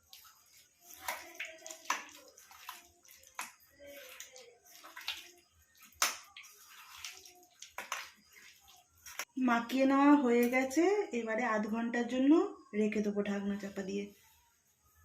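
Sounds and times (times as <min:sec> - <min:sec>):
hands squelching wet marinade: 0:00.0 - 0:09.3.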